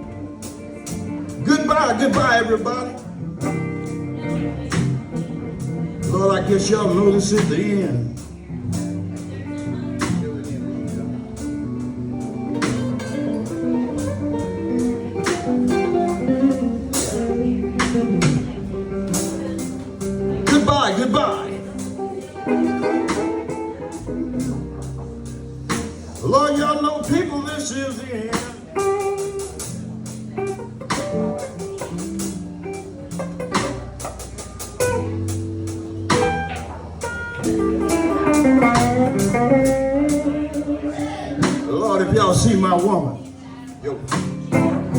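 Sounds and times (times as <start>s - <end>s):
blues band playing: 0.0s - 44.9s
guitar lines: 0.0s - 44.9s
upright bass: 0.0s - 44.9s
drum hits: 33.2s - 40.4s.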